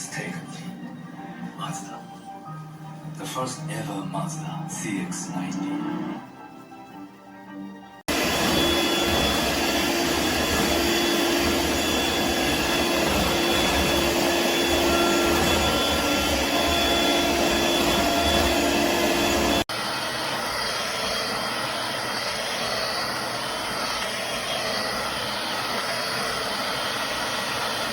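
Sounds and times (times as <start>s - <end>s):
vacuum motor whining: 8.1s - 27.9s.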